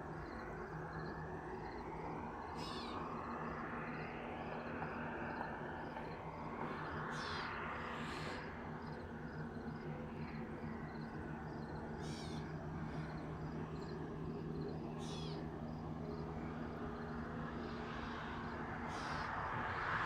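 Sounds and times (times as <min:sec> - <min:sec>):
steady low hum: 0:00.0 - 0:20.0
bird calls: 0:12.0 - 0:12.5, 0:14.9 - 0:15.4
faint bird chirps: 0:12.0 - 0:12.5, 0:15.0 - 0:15.4.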